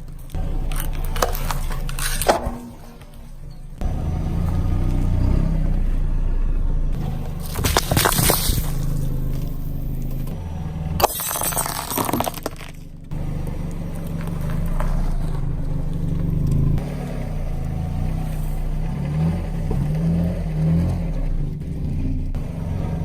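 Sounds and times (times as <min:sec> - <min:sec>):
tyre crushing objects: 0:00.0 - 0:03.2, 0:07.0 - 0:16.9
car engine running at low speed: 0:00.0 - 0:23.0.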